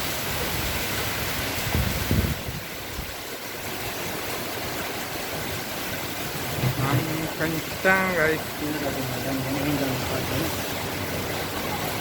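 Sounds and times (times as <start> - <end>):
gusty wind blowing: 0.0 - 9.3
wind buffeting microphone: 0.1 - 7.8.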